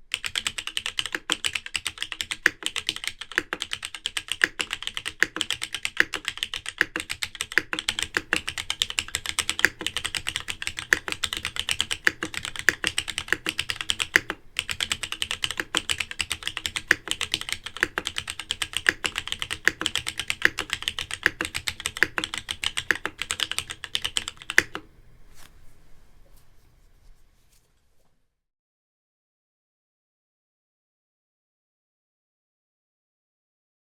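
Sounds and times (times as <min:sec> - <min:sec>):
mechanical keyboard typing: 0:00.1 - 0:24.9.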